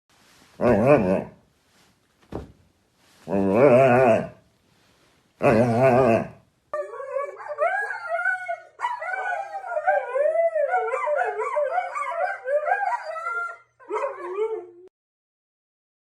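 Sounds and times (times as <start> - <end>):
dog howling and whining: 3.3 - 4.4, 5.4 - 14.9.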